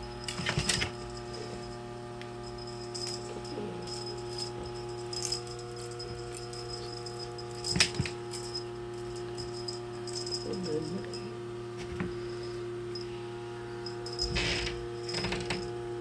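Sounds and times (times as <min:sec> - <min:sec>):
light metallic jingling: 0:00.0 - 0:13.2, 0:13.8 - 0:15.8
steady hum: 0:00.0 - 0:16.0.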